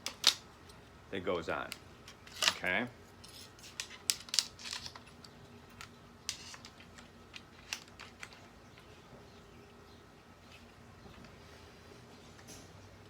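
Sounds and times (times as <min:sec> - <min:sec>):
rifle parts clicking: 0:00.0 - 0:00.8, 0:01.7 - 0:08.5.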